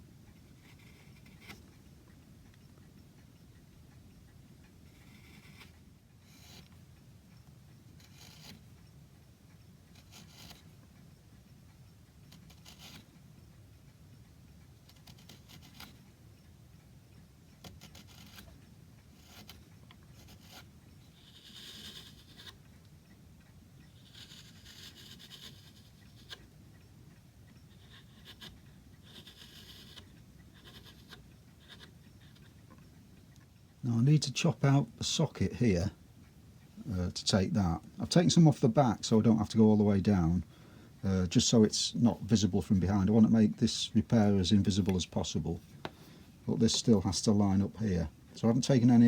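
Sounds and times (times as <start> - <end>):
chisel scraping wood: 0.6 - 1.6, 4.9 - 6.8, 8.0 - 8.7, 9.9 - 10.7, 12.3 - 13.1, 14.9 - 16.0, 17.6 - 18.6, 19.2 - 22.6, 23.9 - 26.5, 27.7 - 32.6.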